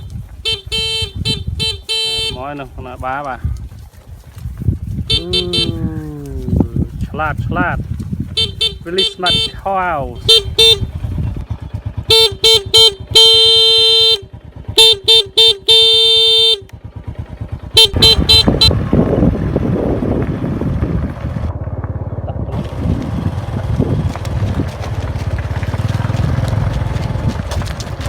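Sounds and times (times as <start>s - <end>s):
motorbike engine idling: 0.0s - 28.0s
motorbike horn beeping: 0.4s - 2.6s, 5.1s - 5.9s, 8.3s - 11.3s, 11.9s - 18.8s.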